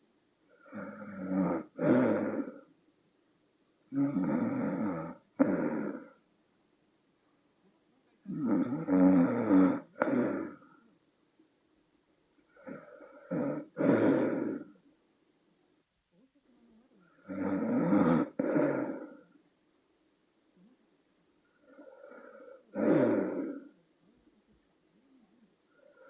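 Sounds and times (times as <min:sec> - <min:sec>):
woman snoring: 0:00.5 - 0:02.7, 0:03.9 - 0:06.2, 0:08.3 - 0:10.8, 0:12.5 - 0:14.8, 0:17.0 - 0:19.4, 0:21.5 - 0:23.8.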